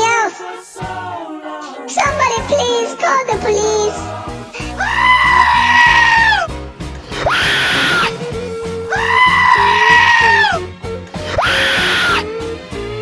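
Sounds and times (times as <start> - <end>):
loud music with bass beat: 4.3 - 13.0
shrill screams: 4.8 - 6.4, 7.0 - 8.2, 9.0 - 12.3.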